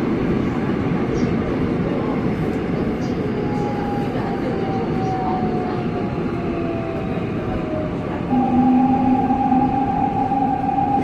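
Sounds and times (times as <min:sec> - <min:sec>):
subway train rumbling: 0:00.0 - 0:11.0
tonal whine: 0:08.3 - 0:11.0.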